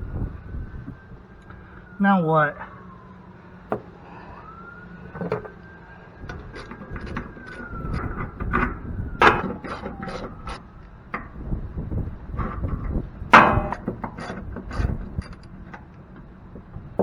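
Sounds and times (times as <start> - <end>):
faint siren wailing: 0.0 - 12.3
metal parts knocking and clanking: 5.1 - 5.6, 6.2 - 17.0.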